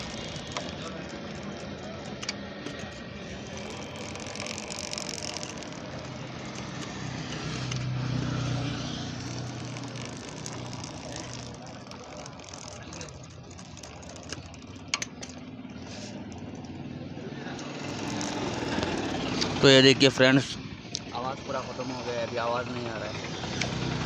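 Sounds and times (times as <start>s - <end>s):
drive chain turning: 0.0s - 16.8s, 17.6s - 19.9s
motorcycle engine running: 0.0s - 24.0s.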